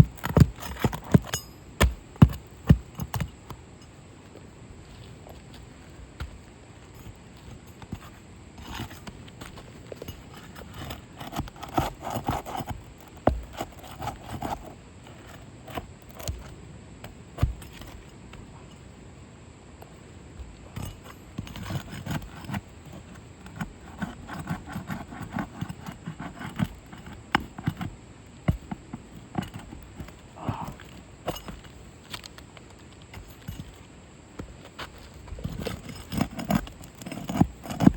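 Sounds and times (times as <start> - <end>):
taps knocks and scrapes on roof: 0.0 - 3.3, 7.4 - 18.1, 20.7 - 32.2, 33.1 - 37.9.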